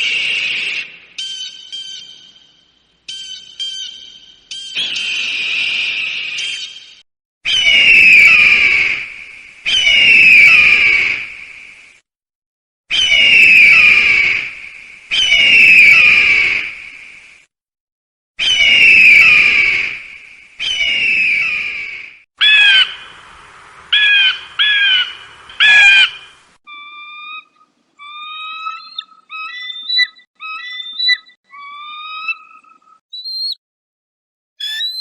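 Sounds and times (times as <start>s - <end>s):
sharp piercing bird cries: 0.0s - 8.8s, 12.9s - 14.1s, 24.0s - 33.6s, 34.6s - 35.0s
eagle screaming: 18.4s - 19.8s, 34.6s - 35.0s
thin whistled piping notes: 33.2s - 33.6s, 34.6s - 35.0s.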